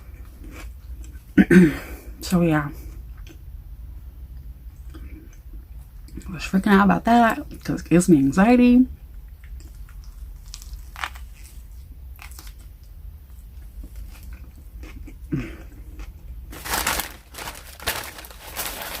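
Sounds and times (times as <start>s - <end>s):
takeout bag crinkling: 16.5s - 19.0s.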